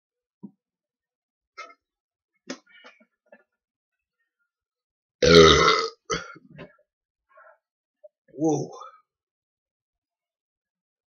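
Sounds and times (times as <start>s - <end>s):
man belching: 5.2s - 6.4s.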